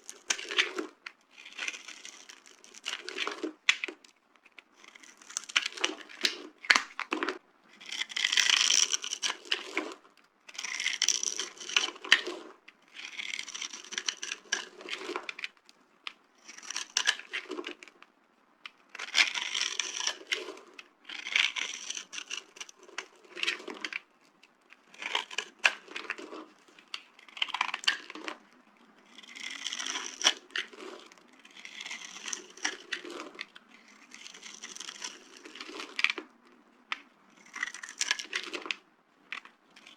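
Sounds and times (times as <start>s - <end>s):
dry soap crunching: 0.0s - 18.0s, 18.7s - 24.1s, 24.7s - 39.9s.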